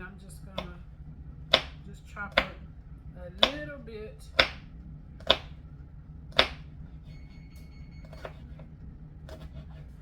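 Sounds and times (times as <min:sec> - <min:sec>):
knife chopping on cutting board: 0:01.5 - 0:02.6, 0:03.4 - 0:03.6, 0:04.3 - 0:05.6, 0:06.3 - 0:06.7, 0:08.0 - 0:08.7, 0:09.3 - 0:09.9.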